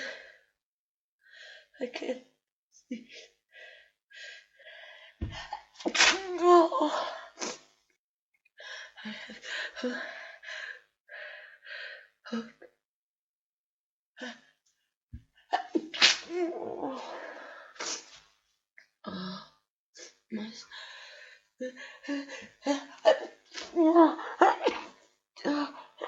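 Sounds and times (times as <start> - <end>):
woman breathing noisily: 20.7 - 22.9.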